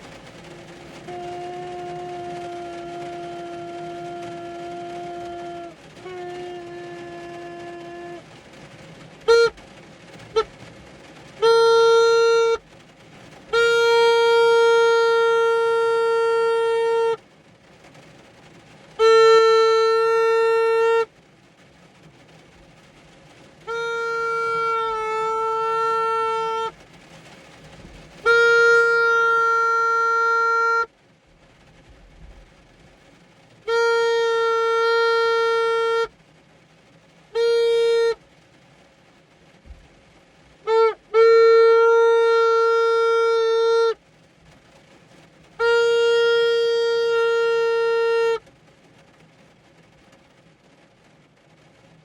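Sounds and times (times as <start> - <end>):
handheld horn blasts: 0.0 - 17.2, 18.9 - 21.2, 23.6 - 27.4, 28.0 - 30.9, 33.6 - 36.2, 37.2 - 38.2, 40.6 - 44.0, 45.5 - 48.5.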